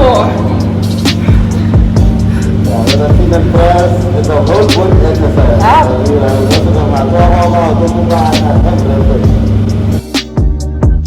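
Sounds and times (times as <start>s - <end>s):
singing over bass and drum beat: 0.0s - 11.0s.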